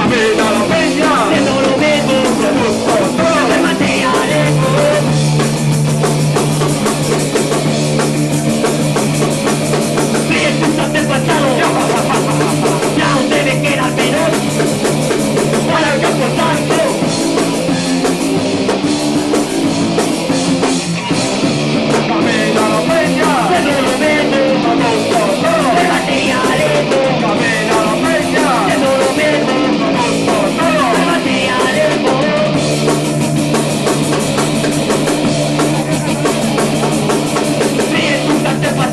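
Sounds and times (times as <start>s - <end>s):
bass guitar: 0.0s - 38.9s
drum kit: 0.0s - 38.9s
electric guitar: 0.0s - 38.9s
rock band playing loudly: 0.0s - 38.9s.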